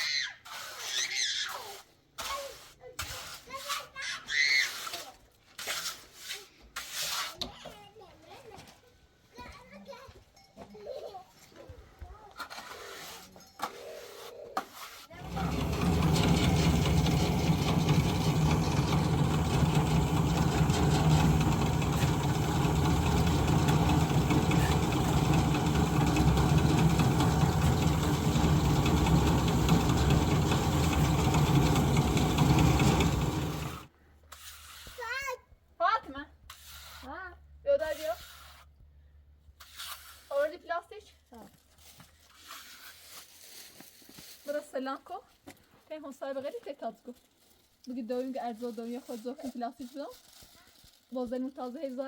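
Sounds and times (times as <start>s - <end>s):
engine running loudly: 15.2s - 33.9s.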